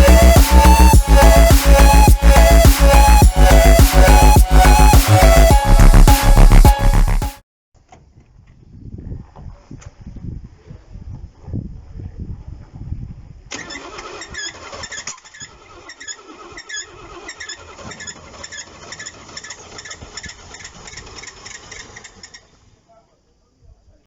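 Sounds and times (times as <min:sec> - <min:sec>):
short high chirps: 0:00.0 - 0:07.3
car engine starting and running: 0:00.0 - 0:07.4.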